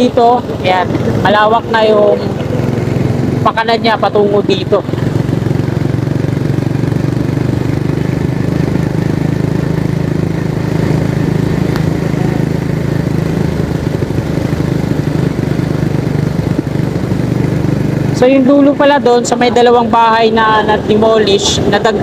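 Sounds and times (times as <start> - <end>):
vehicle engine and road noise: 0.0 - 22.0.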